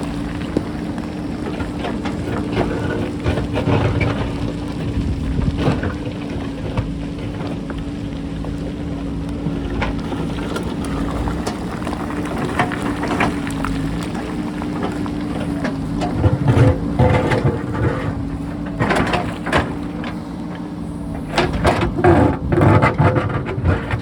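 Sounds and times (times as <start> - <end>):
diesel engine running: 0.0 - 24.0
rock scraping against bucket: 21.4 - 24.0.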